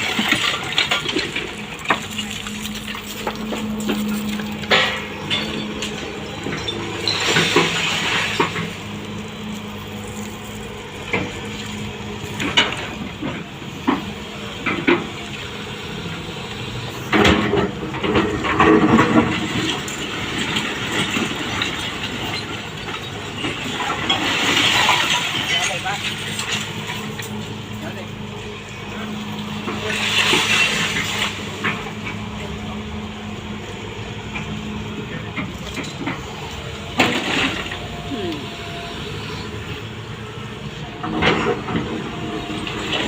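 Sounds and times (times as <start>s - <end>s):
debris clattering and scraping: 0.0s - 15.2s, 17.1s - 28.1s, 29.0s - 32.6s, 34.4s - 38.0s
excavator engine running: 0.0s - 43.0s.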